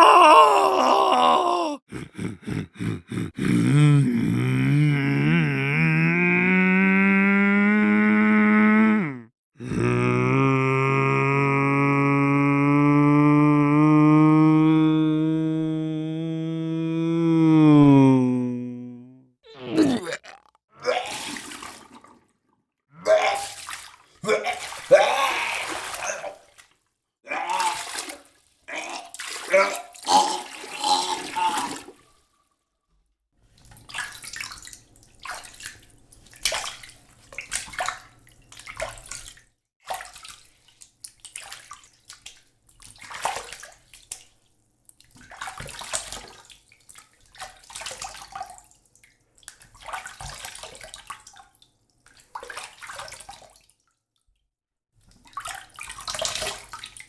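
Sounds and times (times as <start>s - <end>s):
water splashing in a tub: 20.9s - 22.4s, 23.1s - 32.2s, 33.6s - 53.8s, 55.0s - 57.0s.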